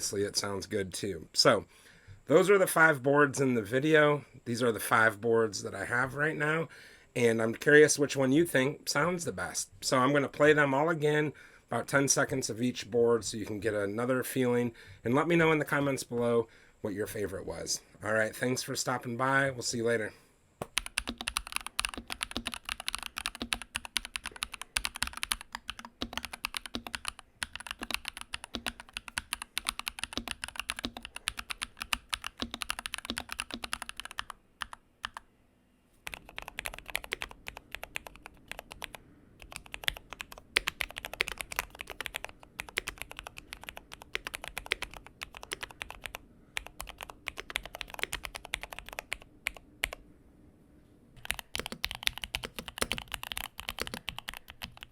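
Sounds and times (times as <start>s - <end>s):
mechanical keyboard typing: 20.6s - 35.2s, 36.0s - 50.0s, 51.2s - 54.9s.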